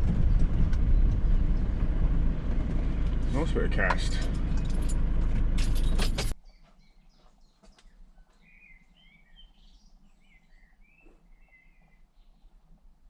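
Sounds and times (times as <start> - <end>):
loud rumbling noise: 0.0 - 6.3
small birds chirping: 6.4 - 12.7.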